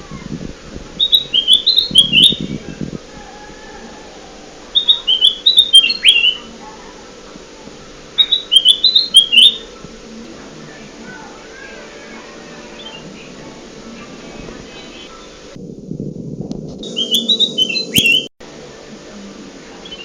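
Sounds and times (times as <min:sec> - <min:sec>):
bird chirping song: 0:01.0 - 0:02.8, 0:04.7 - 0:06.5, 0:08.2 - 0:09.8, 0:12.6 - 0:13.5, 0:16.8 - 0:18.3.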